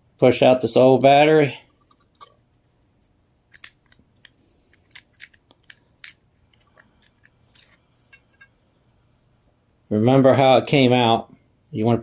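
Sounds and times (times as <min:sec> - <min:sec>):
plastic key fob clicks and scrapes: 0:03.5 - 0:08.4.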